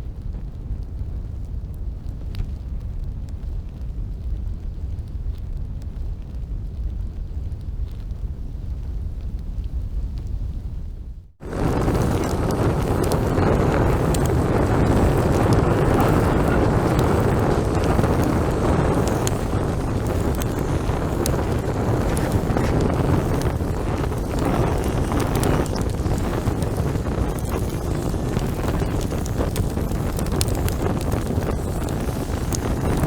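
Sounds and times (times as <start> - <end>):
wind buffeting microphone: 0.0 - 33.0
faint clicks: 11.5 - 33.0.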